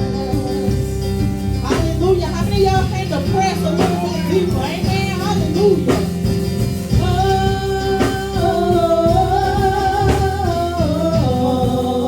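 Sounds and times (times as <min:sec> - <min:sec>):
band backing with beat: 0:00.0 - 0:12.0.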